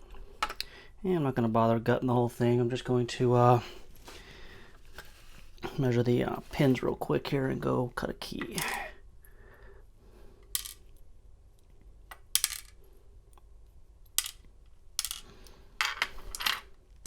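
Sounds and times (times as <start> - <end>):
metal parts clinking on hard surface: 10.5 - 11.0, 12.1 - 12.8, 14.1 - 16.7.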